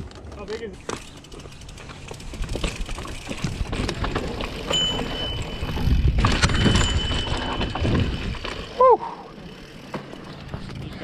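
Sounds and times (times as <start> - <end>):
bike clicks and rattles: 0.0 - 11.0
bike tyres rumbling on dirt: 0.0 - 11.0
thin high tone: 4.7 - 5.8.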